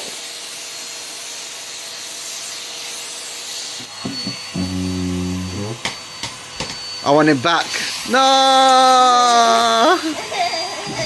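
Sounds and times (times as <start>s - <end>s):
vacuum cleaner running: 0.0s - 11.0s
low steady tone: 4.1s - 7.2s.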